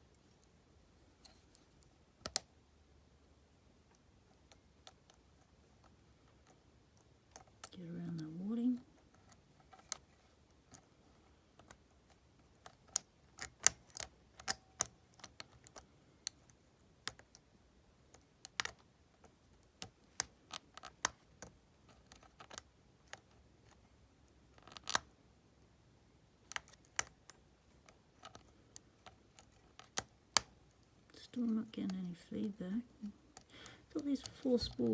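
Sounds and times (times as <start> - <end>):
lock pick clicking and scraping: 12.6 - 17.4, 26.5 - 30.8.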